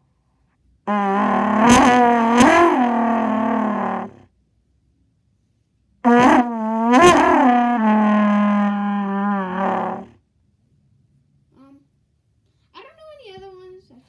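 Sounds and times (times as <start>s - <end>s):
trumpet buzzy held note: 0.9s - 4.2s, 6.1s - 10.1s.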